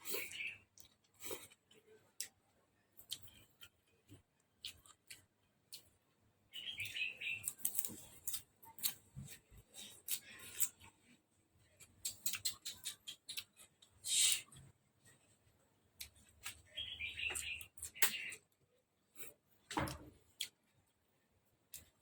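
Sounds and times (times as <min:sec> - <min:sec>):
chewing mouth smacks: 0:12.0 - 0:13.6.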